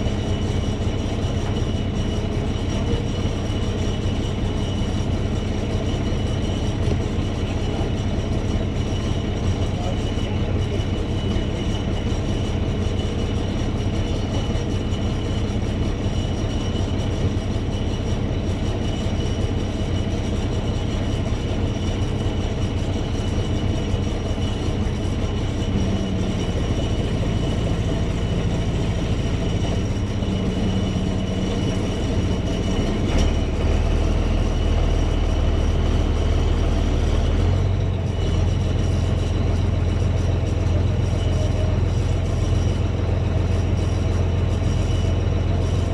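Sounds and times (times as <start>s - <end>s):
heavy vehicle engine rumbling: 0.0s - 45.9s.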